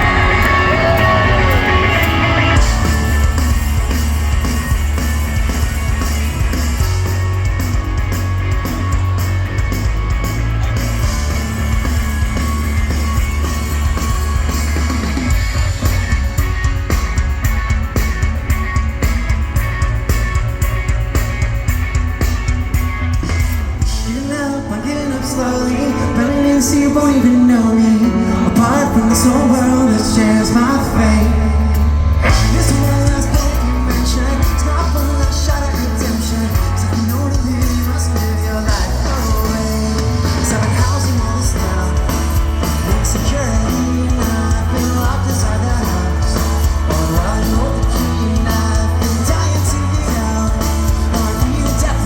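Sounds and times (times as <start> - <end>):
person singing: 0.0 - 7.2, 23.9 - 52.0
rock band playing live: 0.0 - 52.0.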